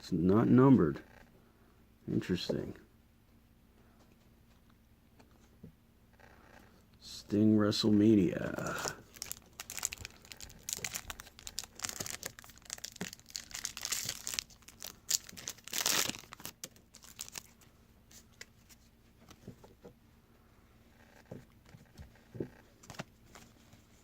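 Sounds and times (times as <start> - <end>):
wrapper crinkling and tearing: 8.6 - 17.7.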